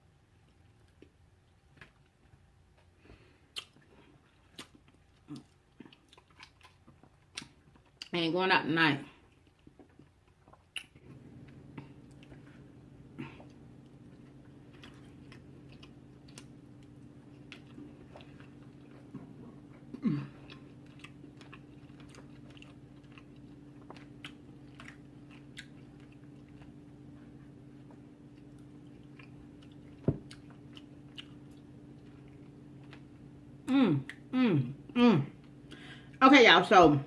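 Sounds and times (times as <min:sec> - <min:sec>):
chewing food: 0:00.4 - 0:08.1, 0:09.1 - 0:33.4
low hum: 0:10.8 - 0:36.2.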